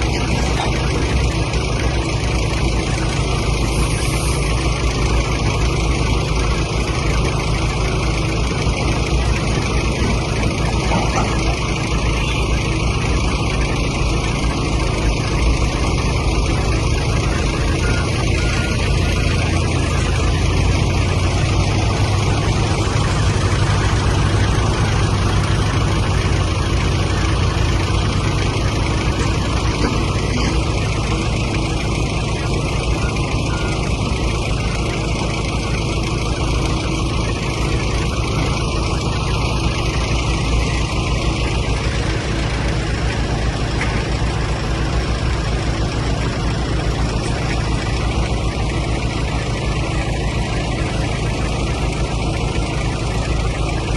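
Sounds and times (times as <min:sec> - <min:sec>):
excavator diesel engine running: 0:00.0 - 0:53.9.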